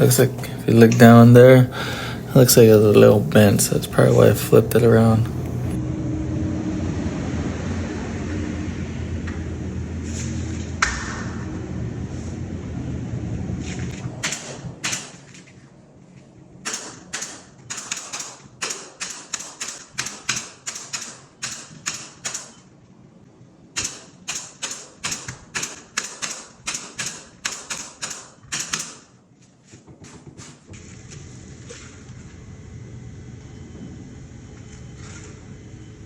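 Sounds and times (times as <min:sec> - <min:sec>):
stapler firing staples: 0:14.2 - 0:15.2, 0:16.6 - 0:22.6, 0:23.8 - 0:29.1.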